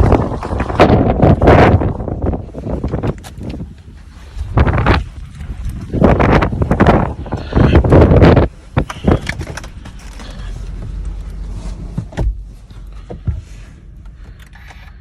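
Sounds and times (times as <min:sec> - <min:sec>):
wind buffeting microphone: 0:00.0 - 0:11.0
low steady rumble: 0:00.0 - 0:15.0
knocks and clicks inside car: 0:06.0 - 0:15.0.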